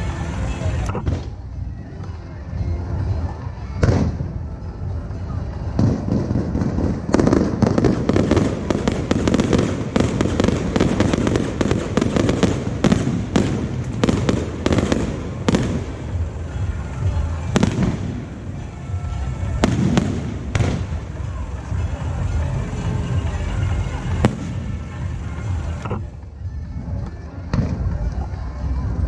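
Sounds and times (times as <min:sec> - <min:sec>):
sharp loud firework reports: 0:03.8 - 0:26.0
fireworks bangs and crackling: 0:03.8 - 0:28.0.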